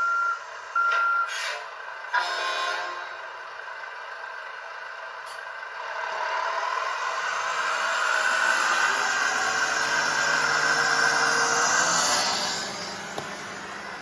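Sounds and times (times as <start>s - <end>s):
reversing beep: 0.0s - 1.3s
simulated truck running noise: 0.0s - 14.0s.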